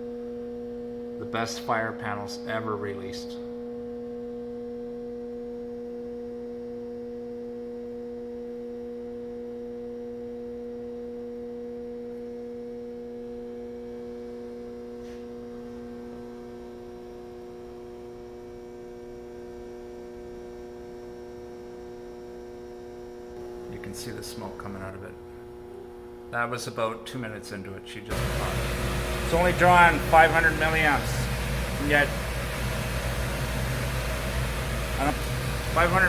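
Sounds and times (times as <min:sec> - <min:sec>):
electrical hum: 0:22.6 - 0:36.0.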